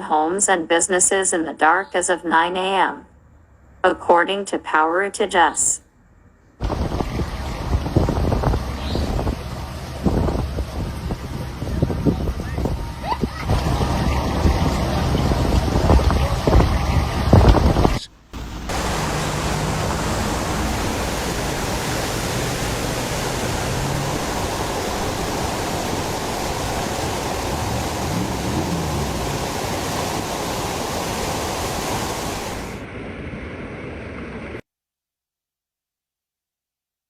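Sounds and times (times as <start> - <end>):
steady rushing noise: 6.6 - 34.6.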